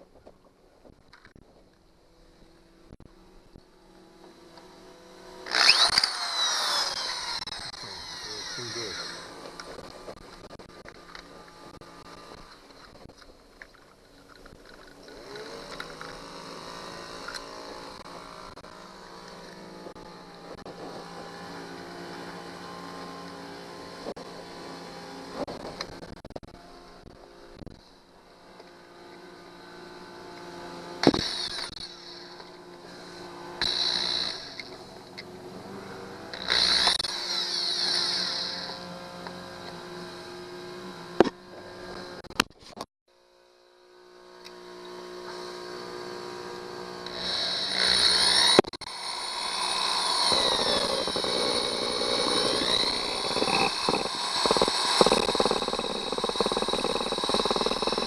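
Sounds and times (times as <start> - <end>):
electric drill running: 4.2 - 13.1, 14.2 - 20.7, 30.3 - 34.8, 36.3 - 40.1, 46.9 - 58.0.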